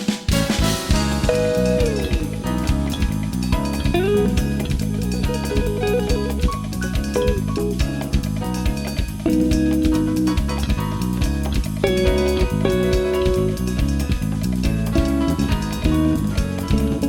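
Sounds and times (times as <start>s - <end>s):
electric guitar rock music: 0.2s - 17.0s
sliding guitar notes: 0.3s - 17.0s.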